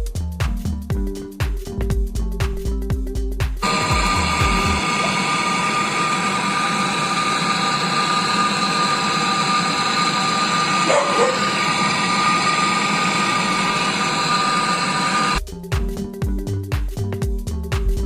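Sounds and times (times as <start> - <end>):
gas hissing through tubing: 3.6 - 15.4.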